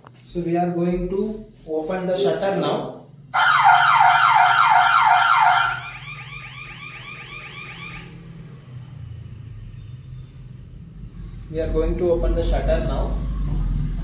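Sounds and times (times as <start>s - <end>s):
electronic alarm siren sweeping: 3.3s - 8.6s.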